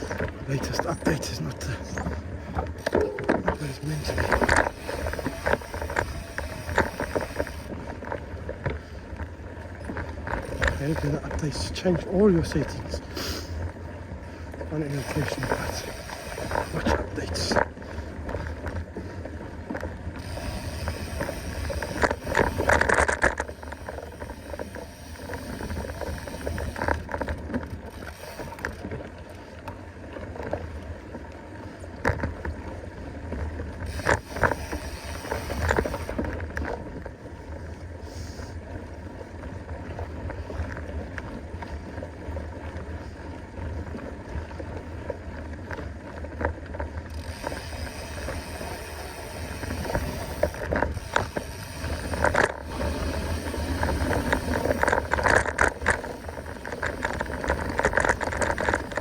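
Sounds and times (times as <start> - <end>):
bike clattering over bumps: 0.0 - 13.0, 14.6 - 29.1, 33.8 - 37.0, 46.1 - 59.0.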